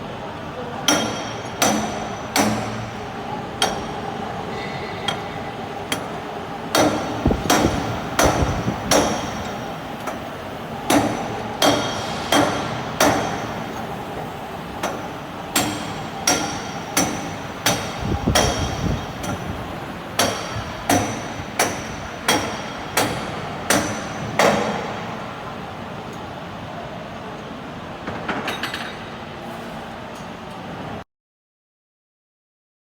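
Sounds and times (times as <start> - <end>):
steady machine hum: 0.0 - 28.1
sharp metallic knocks: 0.9 - 2.9, 6.7 - 10.2, 10.9 - 13.6, 15.6 - 19.5, 20.2 - 24.9.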